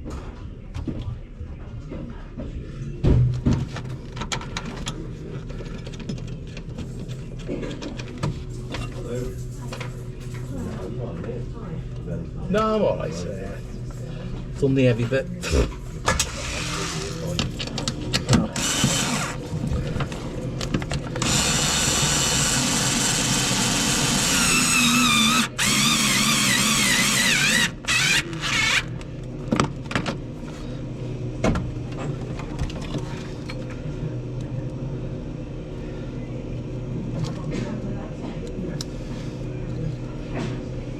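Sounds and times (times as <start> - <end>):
power drill running: 18.5 - 19.4, 21.2 - 28.9.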